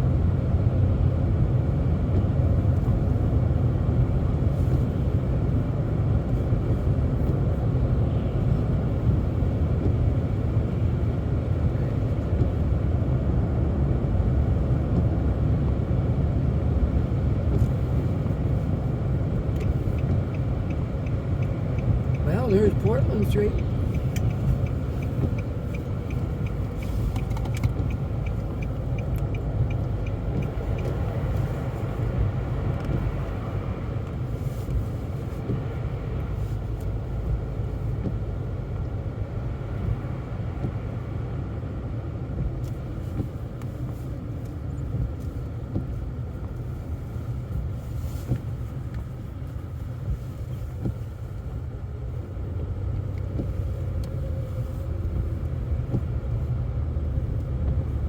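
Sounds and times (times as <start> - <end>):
car engine and tyres rumbling: 0.0 - 58.0
light regular ticking: 17.4 - 33.4.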